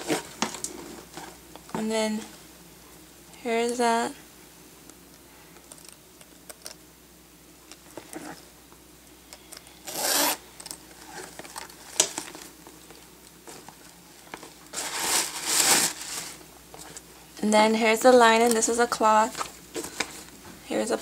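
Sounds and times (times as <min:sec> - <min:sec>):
bag rustling in hands: 0:13.4 - 0:17.1.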